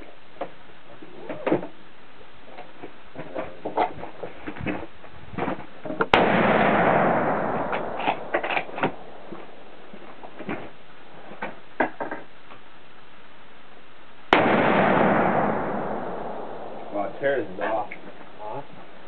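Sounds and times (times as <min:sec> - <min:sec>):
rifle shot with echo: 0:06.1 - 0:09.3, 0:14.3 - 0:17.2.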